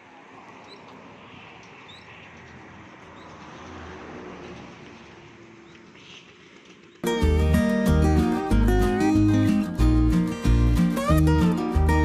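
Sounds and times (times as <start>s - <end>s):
vehicle passing: 0.1s - 12.0s
plucked guitar music: 7.0s - 12.0s.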